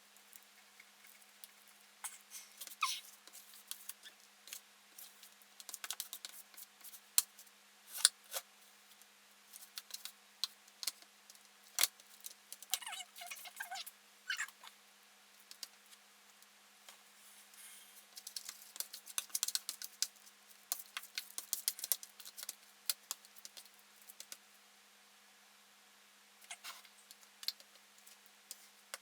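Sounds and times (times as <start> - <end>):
brief squeaks: 2.0 - 3.0.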